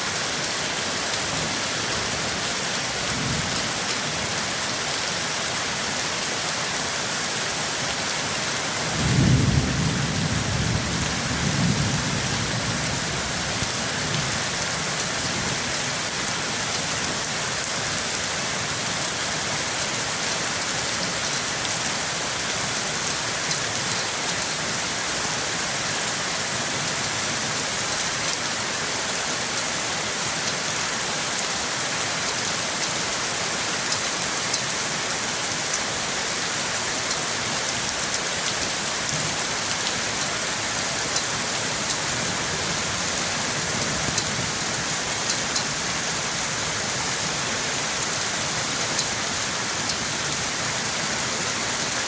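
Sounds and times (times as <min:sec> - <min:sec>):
heavy rain falling: 0:00.0 - 0:52.0
thunder rumbling: 0:09.0 - 0:13.2.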